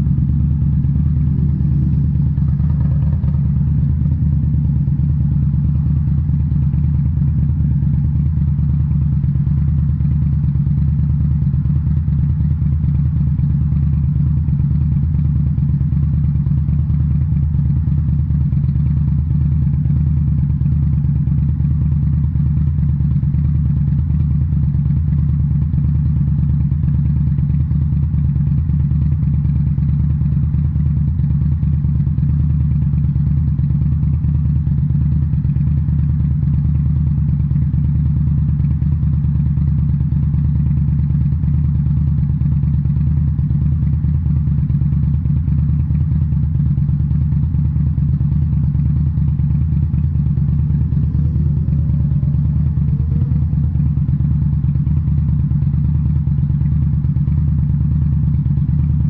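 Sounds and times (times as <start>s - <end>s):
motorcycle engine cruising: 0.0s - 10.0s.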